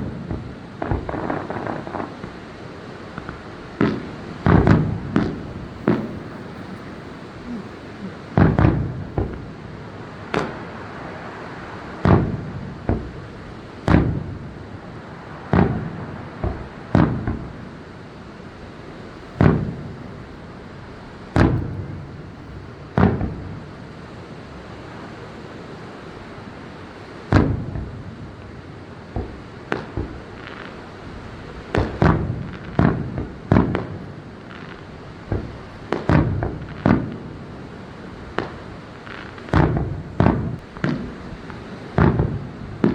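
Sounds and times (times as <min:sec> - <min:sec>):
murmur of background noise: 0:02.5 - 0:10.3
fireworks booming: 0:03.2 - 0:09.7, 0:18.9 - 0:23.4, 0:38.2 - 0:42.9.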